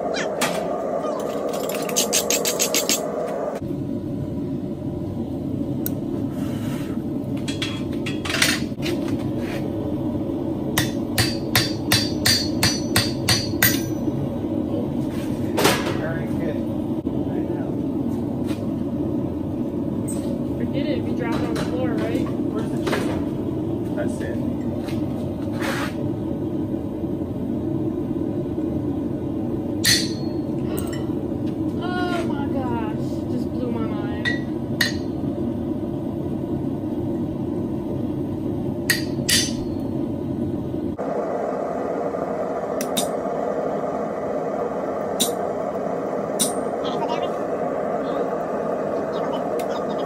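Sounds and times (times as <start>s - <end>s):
low hum: 0.0s - 50.0s
low shop rumble: 0.0s - 50.0s
hammer striking steel on anvil: 10.8s - 14.1s, 29.8s - 31.1s, 34.2s - 35.2s, 38.9s - 39.8s, 45.2s - 45.4s, 46.4s - 46.6s.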